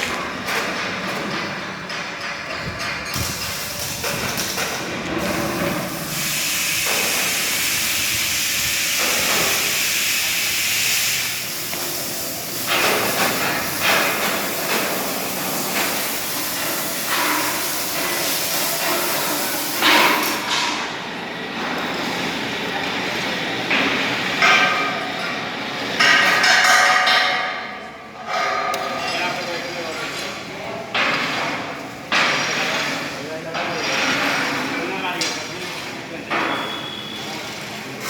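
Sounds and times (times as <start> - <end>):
knocks and clanks: 0.0 - 5.9, 26.0 - 29.4
loud hissing: 5.9 - 18.0.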